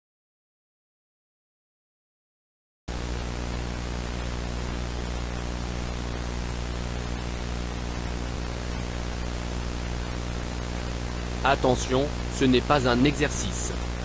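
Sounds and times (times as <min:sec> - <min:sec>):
low electrical hum: 0:02.9 - 0:14.0
static hiss: 0:02.9 - 0:14.0.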